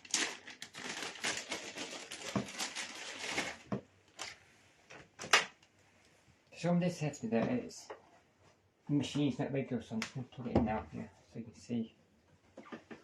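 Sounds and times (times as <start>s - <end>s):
rustling and clicking of objects: 0.0s - 5.7s.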